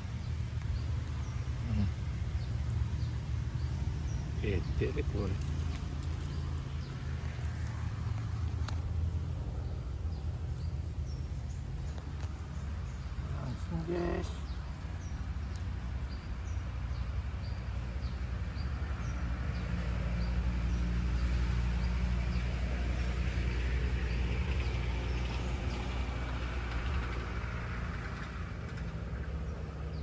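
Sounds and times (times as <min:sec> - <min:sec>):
vehicle engine passing by: 0:00.0 - 0:30.0.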